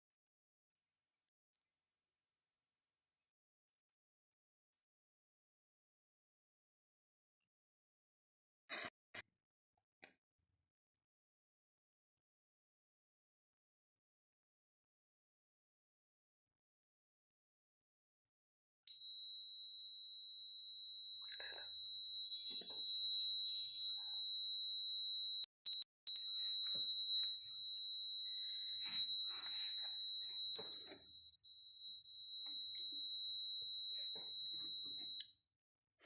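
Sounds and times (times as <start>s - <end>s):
high-pitched piezo buzzer tone: 18.9s - 35.2s.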